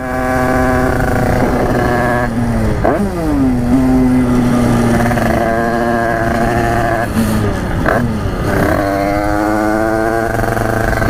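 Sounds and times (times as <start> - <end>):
moped engine revving: 0.0 - 11.0.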